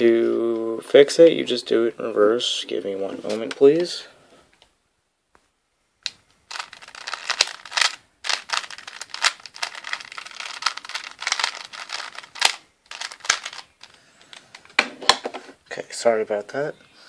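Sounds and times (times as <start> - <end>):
plastic puzzle cube clicking: 6.0 - 14.6.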